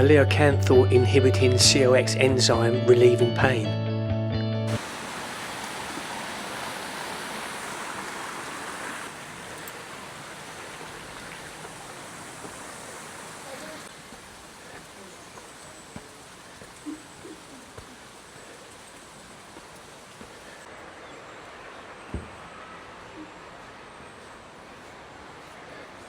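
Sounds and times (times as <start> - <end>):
splashing fountain water: 4.8 - 20.7.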